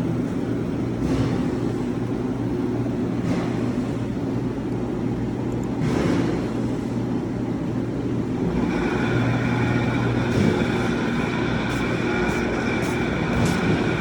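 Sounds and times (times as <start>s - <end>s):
steady high-pitched whine: 7.8s - 14.0s
truck engine low hum: 8.2s - 14.0s.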